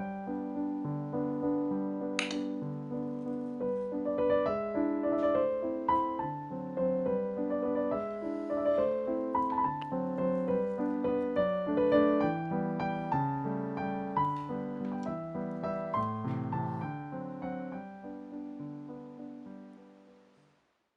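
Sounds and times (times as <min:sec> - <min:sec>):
solo piano piece: 0:00.0 - 0:20.5.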